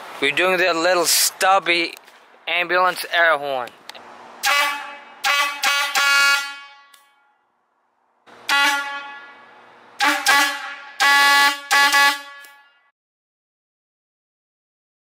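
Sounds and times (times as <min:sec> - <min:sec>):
air horn blasts: 0:04.4 - 0:07.5, 0:08.3 - 0:12.9.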